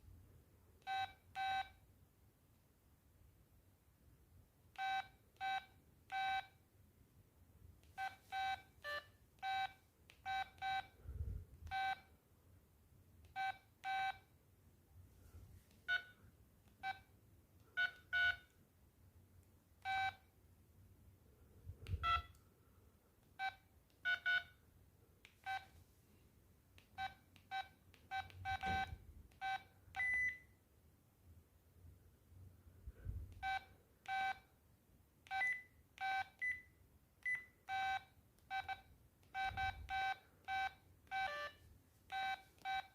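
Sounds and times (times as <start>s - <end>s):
phone key-press beeps: 8.0s - 10.9s, 21.9s - 22.4s, 23.4s - 24.5s, 27.0s - 30.5s, 33.4s - 34.4s, 35.3s - 42.9s.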